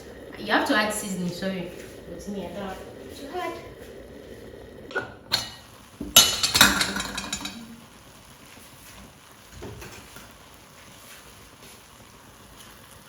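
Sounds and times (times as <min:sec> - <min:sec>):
metal clattering against cooking pot: 0:05.0 - 0:07.7.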